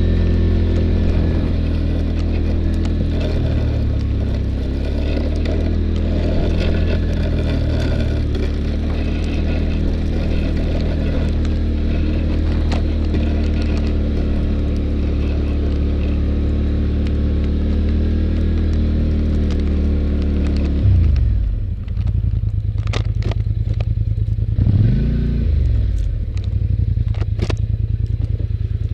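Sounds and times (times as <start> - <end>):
atv engine running under load: 0.0 - 28.9.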